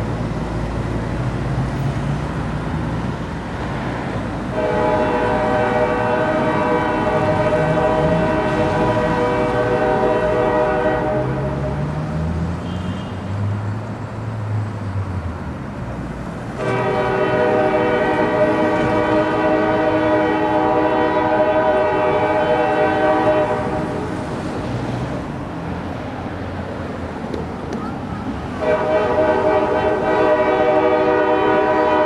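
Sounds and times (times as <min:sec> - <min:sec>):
low locomotive rumble: 0:00.0 - 0:32.0
locomotive air horn chord: 0:04.5 - 0:11.8, 0:16.6 - 0:24.1, 0:28.6 - 0:32.0.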